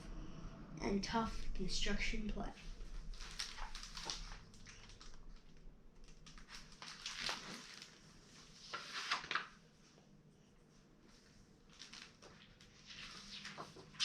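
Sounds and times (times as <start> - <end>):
book pages rustling: 2.9 - 9.6, 11.1 - 14.0.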